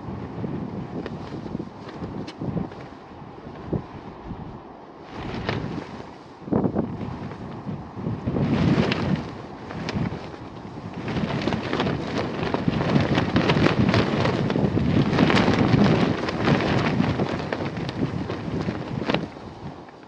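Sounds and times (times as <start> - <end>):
gusty wind buffeting microphone: 0.0 - 20.0
sharp crackles: 8.4 - 20.0.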